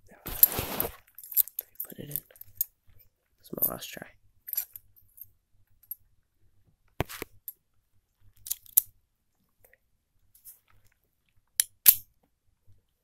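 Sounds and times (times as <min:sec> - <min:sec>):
handcuffs clicking and scraping: 0:00.3 - 0:02.7, 0:04.5 - 0:06.0, 0:08.4 - 0:08.9, 0:11.6 - 0:12.0.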